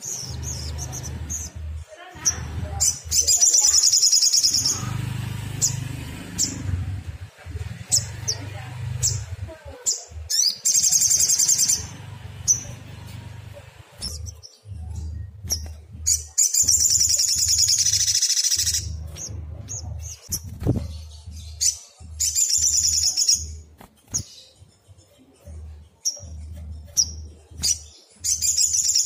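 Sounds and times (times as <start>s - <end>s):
bird high-pitched trills: 0.0s - 5.0s, 9.0s - 13.3s, 14.0s - 24.9s, 26.0s - 29.0s
low uneven rumble: 0.1s - 3.4s, 4.6s - 10.3s, 11.1s - 16.2s, 18.7s - 22.3s.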